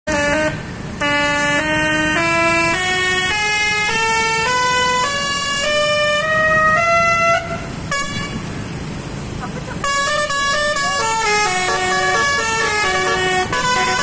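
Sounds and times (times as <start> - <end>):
musical bus horn rising scale: 0.1 - 8.4, 9.8 - 14.0.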